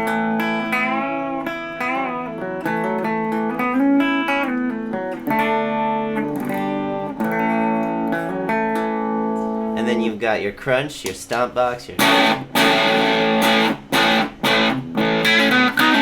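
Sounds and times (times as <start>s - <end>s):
clean electric guitar blues licks: 0.0s - 10.2s, 11.0s - 16.0s.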